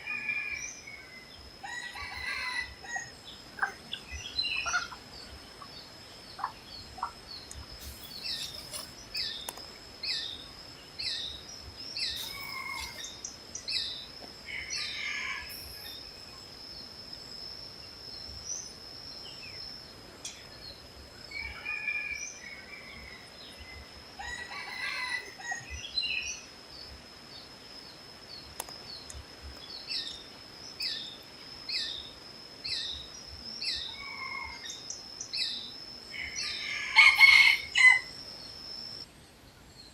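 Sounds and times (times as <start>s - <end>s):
high-pitched whine: 0.0s - 39.1s
rooster crowing: 1.6s - 3.1s, 12.2s - 13.1s, 14.5s - 15.8s, 24.2s - 25.7s, 34.0s - 34.7s, 36.2s - 38.2s
bird chirps: 2.9s - 17.0s.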